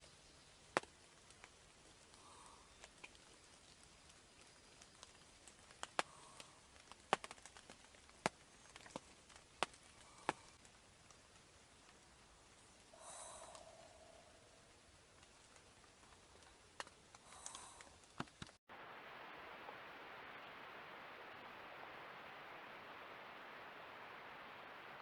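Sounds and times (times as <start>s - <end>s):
rain drips ticking: 0.4s - 25.0s
faint call: 12.9s - 14.7s.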